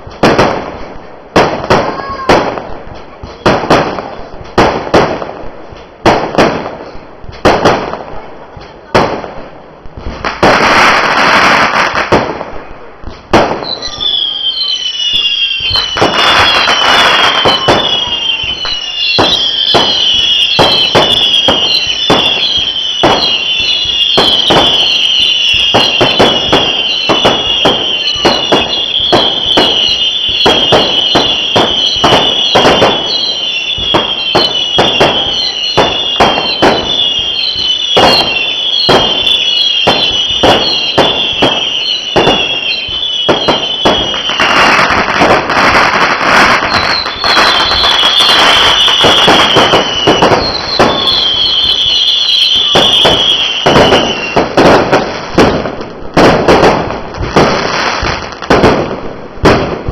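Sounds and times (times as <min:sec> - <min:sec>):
fireworks bangs and crackling: 0:00.0 - 0:59.9
shrill firework whistles: 0:13.5 - 0:55.3.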